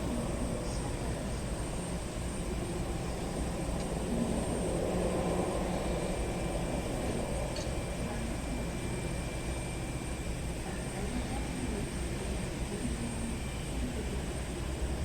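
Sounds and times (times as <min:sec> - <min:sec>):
distant jet engines running: 0:00.0 - 0:15.0.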